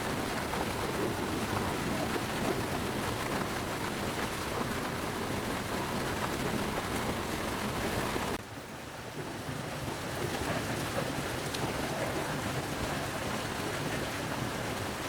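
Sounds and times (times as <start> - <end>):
hissing running water: 0.0 - 8.4.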